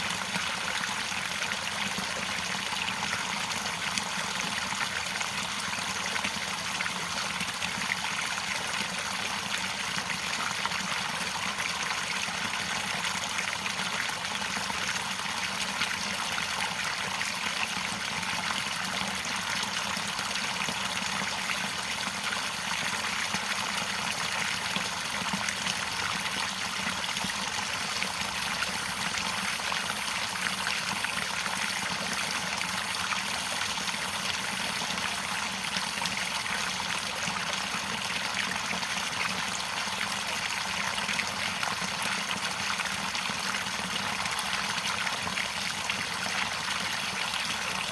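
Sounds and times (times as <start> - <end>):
stream water trickling: 0.0 - 47.9.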